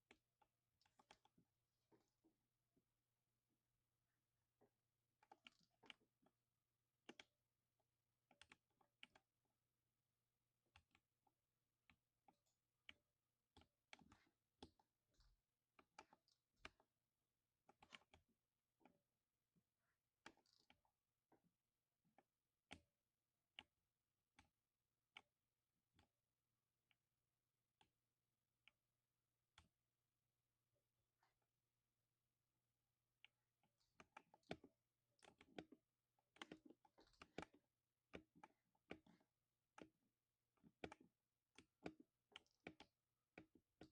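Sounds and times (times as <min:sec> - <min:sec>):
faint mechanical keyboard typing: 0:33.2 - 0:40.0, 0:40.6 - 0:43.9.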